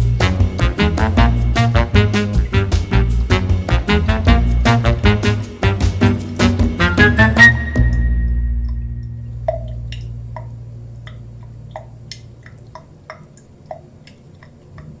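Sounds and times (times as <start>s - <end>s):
low note: 0.0s - 12.4s
water drops plinking: 7.5s - 14.6s.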